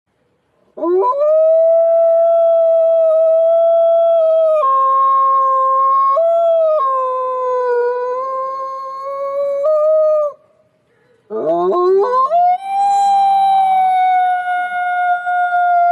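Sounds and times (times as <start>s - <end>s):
wolf howling: 11.3s - 15.9s.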